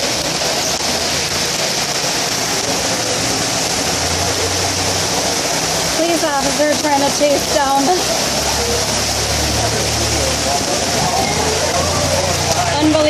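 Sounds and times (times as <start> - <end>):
flood water rushing: 0.0 - 13.0
heavy rain: 0.0 - 13.0
vehicle engine hum: 0.0 - 13.0.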